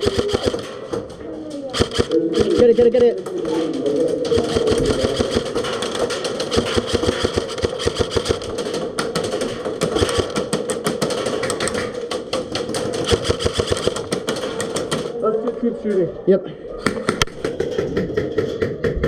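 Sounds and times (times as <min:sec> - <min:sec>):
airsoft guns firing full-auto: 0:00.0 - 0:00.8, 0:01.7 - 0:03.3, 0:04.3 - 0:15.1.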